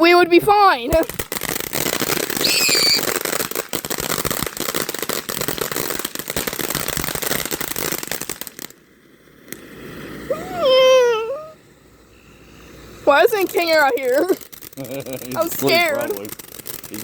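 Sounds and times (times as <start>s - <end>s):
firework crackling pops: 0.3s - 17.0s
high firework whistle: 2.3s - 3.3s.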